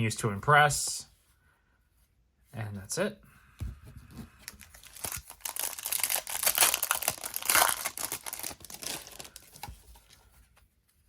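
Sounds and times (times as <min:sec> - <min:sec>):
wrapper tearing and crinkling: 0:04.6 - 0:09.7.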